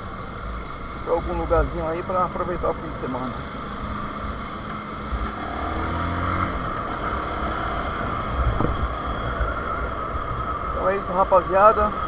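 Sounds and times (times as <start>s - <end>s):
motorcycle engine running: 0.0s - 12.0s
wind rushing over microphone: 5.1s - 12.0s.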